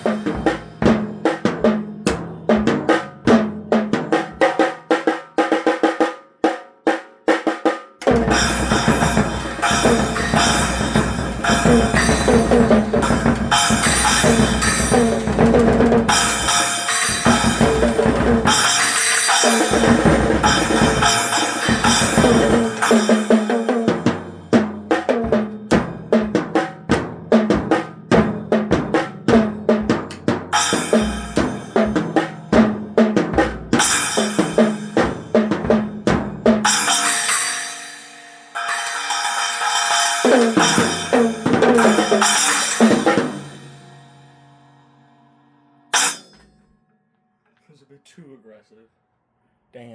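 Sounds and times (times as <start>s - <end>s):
cymbal crashes: 0.0s - 1.3s, 8.1s - 24.5s, 36.6s - 45.1s, 46.0s - 46.4s
drum kit played hard: 0.0s - 44.9s, 45.9s - 46.4s.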